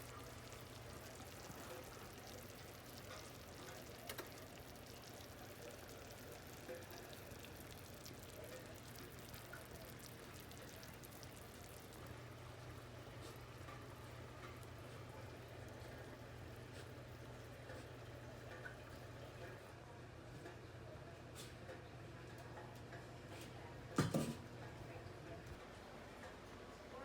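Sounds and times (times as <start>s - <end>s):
food sizzling in a pan: 0.0s - 18.4s.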